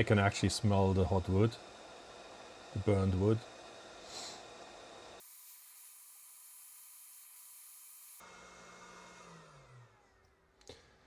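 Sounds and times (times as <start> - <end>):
hot air gun hissing: 1.2 - 8.2.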